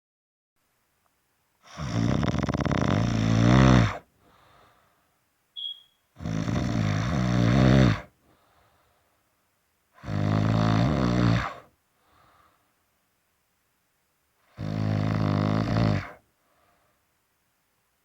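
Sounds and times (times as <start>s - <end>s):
loud snoring: 1.6s - 4.1s, 6.2s - 8.2s, 10.0s - 11.7s, 14.5s - 16.2s
faint breath out: 3.8s - 5.2s, 7.9s - 9.4s, 11.4s - 12.8s, 16.0s - 17.1s
brief high whistle: 5.6s - 6.0s.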